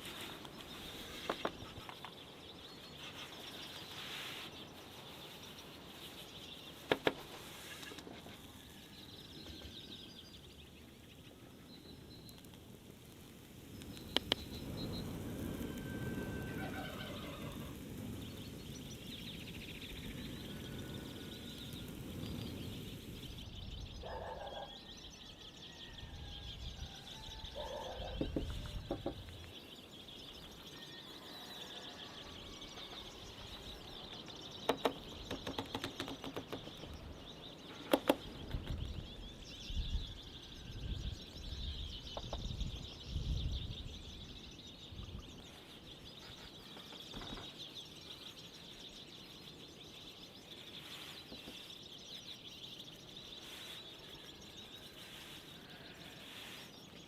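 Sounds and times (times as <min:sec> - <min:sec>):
birds chirping: 0:00.0 - 0:57.0
sharp clicks: 0:13.7 - 0:14.6, 0:34.6 - 0:37.0
dull knocks: 0:28.2 - 0:29.2.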